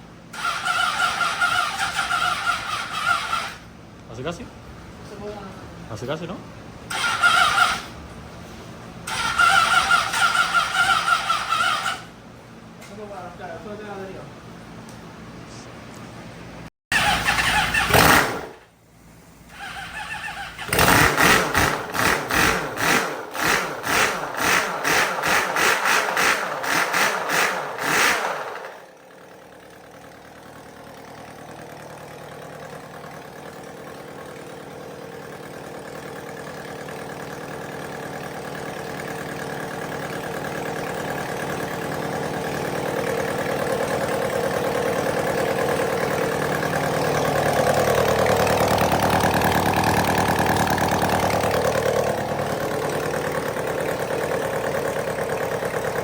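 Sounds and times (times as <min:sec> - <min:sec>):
motorcycle engine idling: 0:00.2 - 0:03.8, 0:28.8 - 0:56.0
motorcycle engine revving: 0:00.3 - 0:03.7, 0:06.9 - 0:08.0, 0:09.0 - 0:12.2, 0:16.9 - 0:18.7, 0:19.5 - 0:56.0.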